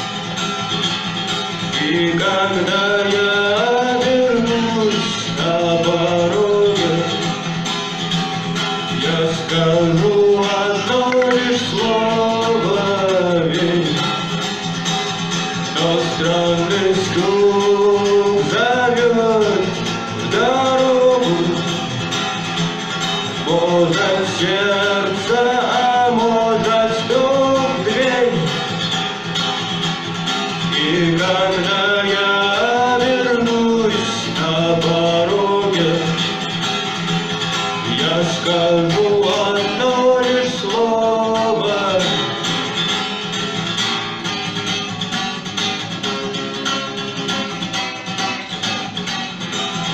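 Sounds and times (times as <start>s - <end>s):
instrumental rock music: 0.0s - 49.9s.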